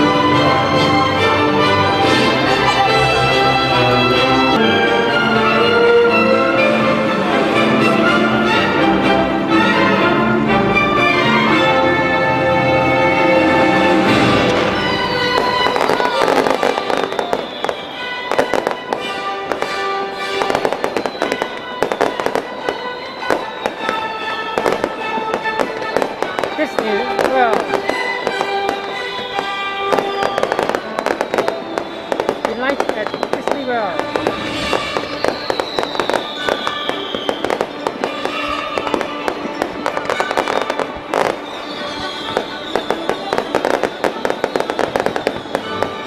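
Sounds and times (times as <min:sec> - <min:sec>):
music with long held notes: 0:00.0 - 0:46.0
fireworks bangs and crackles: 0:13.8 - 0:46.0.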